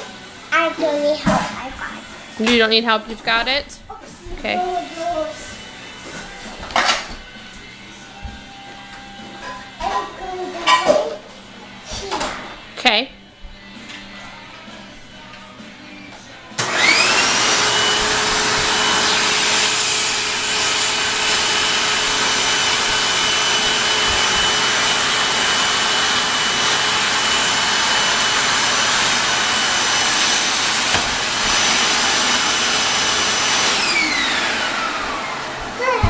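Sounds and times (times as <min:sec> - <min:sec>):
vacuum cleaner motor whine: 0:16.6 - 0:36.0.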